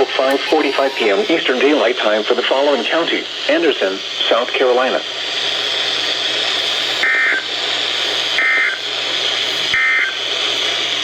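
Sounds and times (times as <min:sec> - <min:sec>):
radio receiver hiss: 0:00.0 - 0:10.8
warbling two-pitch data tones: 0:00.2 - 0:01.9.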